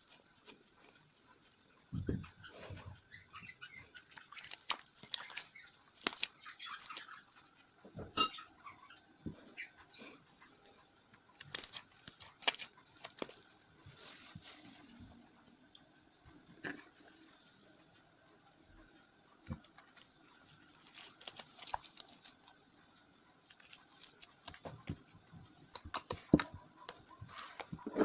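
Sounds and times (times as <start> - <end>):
slime squelching: 3.4 - 7.4, 11.3 - 15.0, 19.4 - 22.7, 23.4 - 28.0.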